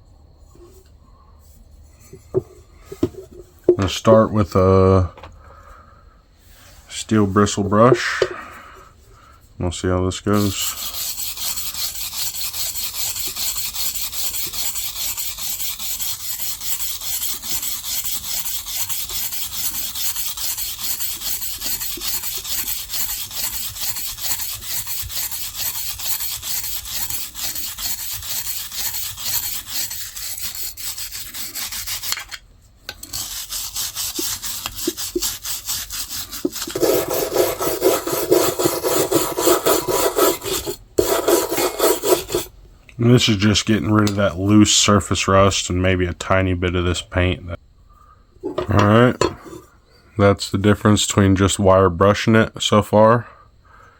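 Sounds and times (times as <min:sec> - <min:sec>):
wire brush scrubbing rusty metal: 0:10.2 - 0:42.5.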